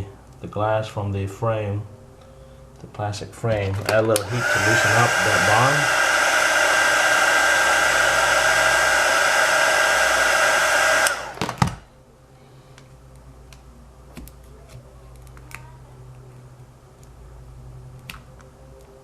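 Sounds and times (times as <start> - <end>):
heat gun blowing with motor whine: 4.1 - 11.8.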